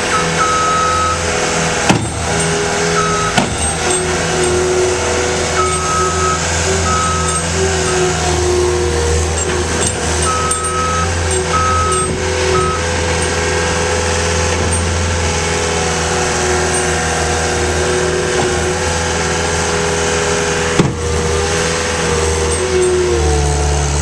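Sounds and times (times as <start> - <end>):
diesel engine running: 0.0 - 24.0
backup alarm beeping: 0.1 - 1.2, 2.9 - 4.0, 5.5 - 8.0, 10.2 - 13.4.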